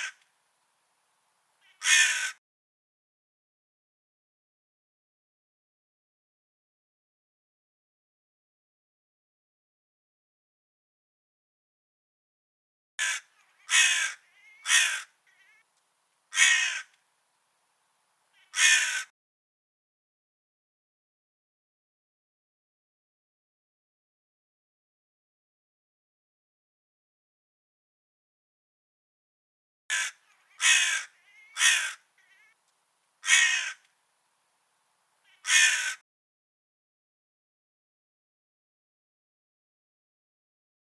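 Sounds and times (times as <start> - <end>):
crow cawing: 1.6 - 2.4, 13.0 - 15.6, 16.3 - 17.0, 18.4 - 19.1, 29.9 - 32.6, 33.2 - 33.9, 35.3 - 36.0.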